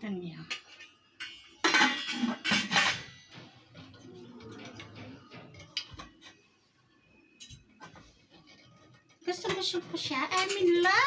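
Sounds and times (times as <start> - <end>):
cookware clattering: 0.5 - 6.4, 9.0 - 11.0.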